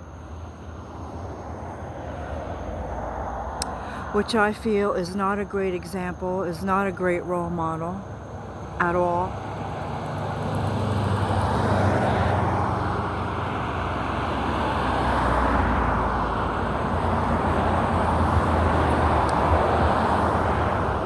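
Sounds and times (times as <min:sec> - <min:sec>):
road vehicle noise: 0:00.0 - 0:21.0.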